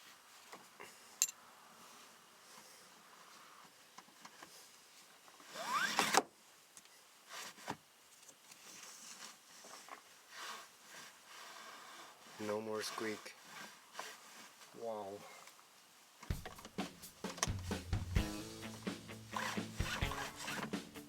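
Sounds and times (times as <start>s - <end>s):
seatbelt zipping from retractor: 5.5s - 6.2s, 19.4s - 20.8s.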